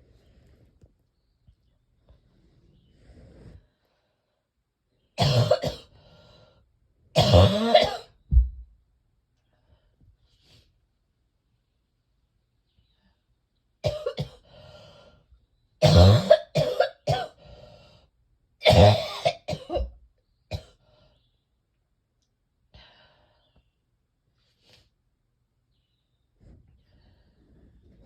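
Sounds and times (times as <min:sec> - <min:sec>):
person coughing chesty cough: 0:05.2 - 0:05.9, 0:07.2 - 0:08.2, 0:13.8 - 0:14.4, 0:15.8 - 0:17.4, 0:18.6 - 0:20.7.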